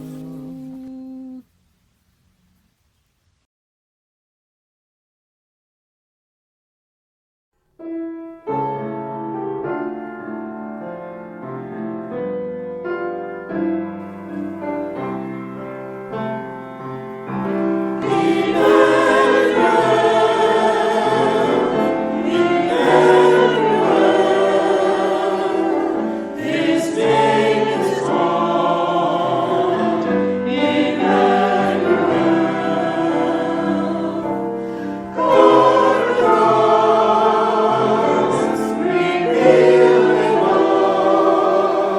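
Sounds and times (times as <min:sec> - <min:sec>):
choir singing sacred music: 0:00.0 - 0:01.4, 0:14.0 - 0:41.9.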